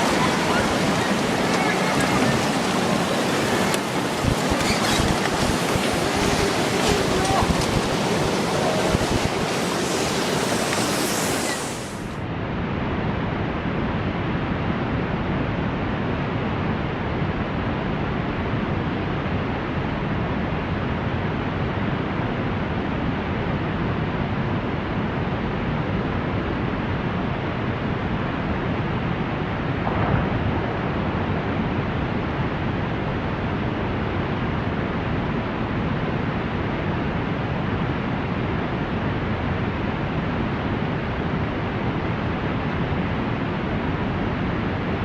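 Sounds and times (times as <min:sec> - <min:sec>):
floodwater rushing: 0:00.0 - 0:12.2.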